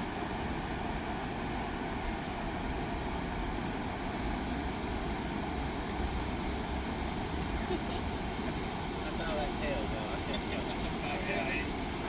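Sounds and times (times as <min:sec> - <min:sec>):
floodwater rushing through spillway: 0:00.0 - 0:12.0.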